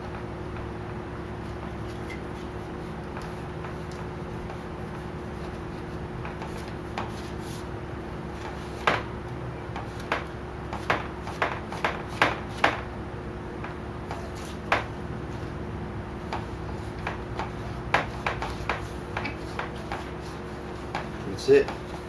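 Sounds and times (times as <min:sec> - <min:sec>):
steady low hum: 0:00.0 - 0:22.0
rubbing strokes over vinyl wrap: 0:04.5 - 0:07.7, 0:16.4 - 0:22.0.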